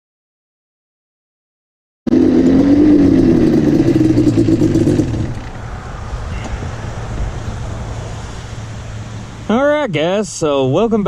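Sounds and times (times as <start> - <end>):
two-stroke engine revving: 2.1 - 5.6.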